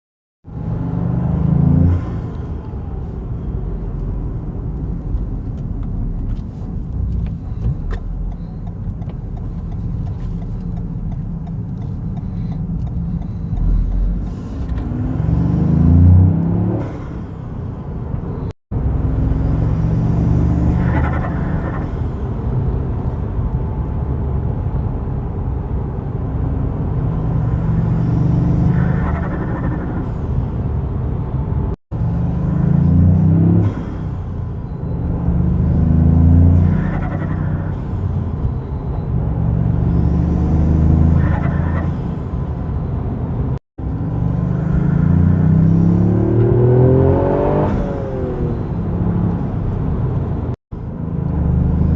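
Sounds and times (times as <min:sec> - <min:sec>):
car engine revving: 0:09.4 - 0:17.4, 0:18.3 - 0:22.3, 0:32.0 - 0:34.2, 0:34.8 - 0:38.6, 0:39.2 - 0:42.4, 0:43.8 - 0:51.9.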